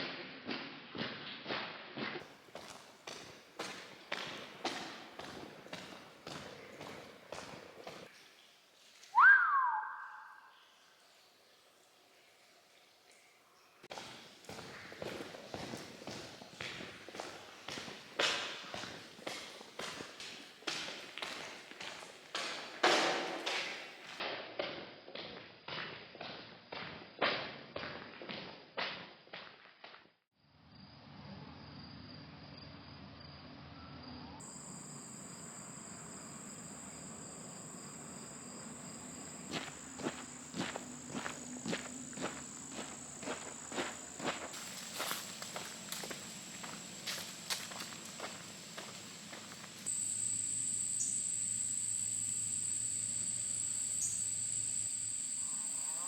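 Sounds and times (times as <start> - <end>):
footsteps: 0.0 - 9.2, 13.9 - 30.0, 38.6 - 50.0
crickets chirring: 34.4 - 56.0
higher insect tone: 34.4 - 56.0.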